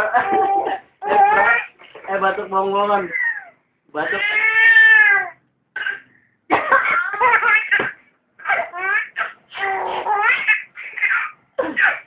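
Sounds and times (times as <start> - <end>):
baby laughing: 0.0 - 1.7, 6.6 - 12.0
person fake coughing: 11.6 - 12.0.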